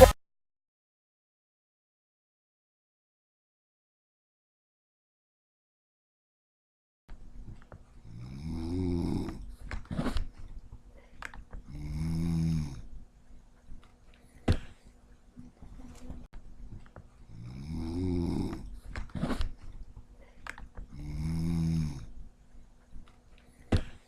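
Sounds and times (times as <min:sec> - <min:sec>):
heavy snoring: 0:08.0 - 0:10.2, 0:11.7 - 0:12.9, 0:17.3 - 0:19.4, 0:20.9 - 0:22.1.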